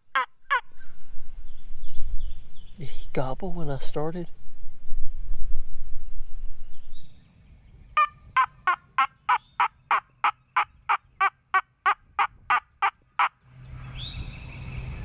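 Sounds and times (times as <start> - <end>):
turkey yelps: 8.0 - 13.4.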